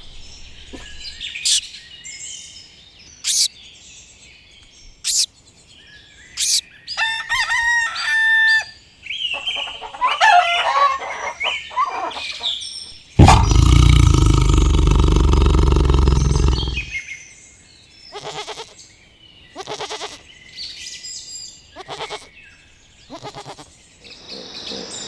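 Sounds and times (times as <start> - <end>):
rooster crowing: 7.0 - 8.8.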